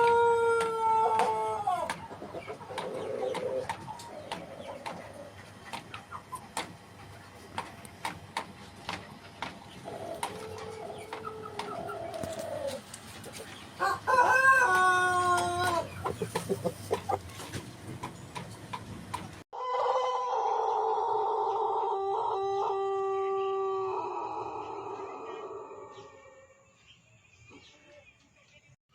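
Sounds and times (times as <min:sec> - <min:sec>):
roosters crowing: 0:00.0 - 0:05.3, 0:09.8 - 0:12.9, 0:13.7 - 0:17.3, 0:19.6 - 0:26.6.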